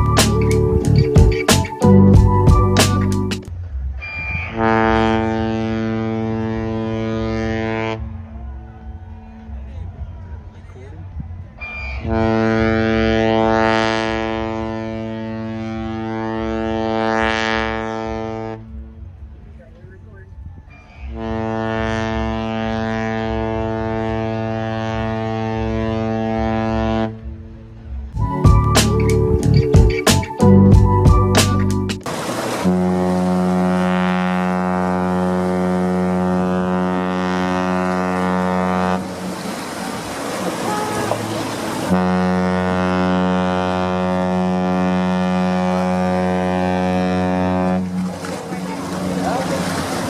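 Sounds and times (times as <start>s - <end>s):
music: 0.0s - 4.7s, 27.2s - 32.0s
ship horn long blast: 4.4s - 9.7s, 11.6s - 19.4s, 21.0s - 28.1s, 32.4s - 50.0s.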